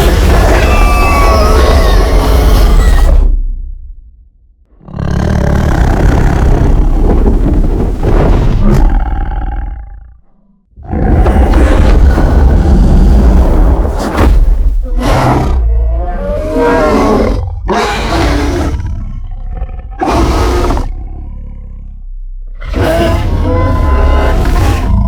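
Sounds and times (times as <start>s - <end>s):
creature roaring: 0.0s - 3.3s, 15.0s - 21.6s, 22.6s - 25.0s.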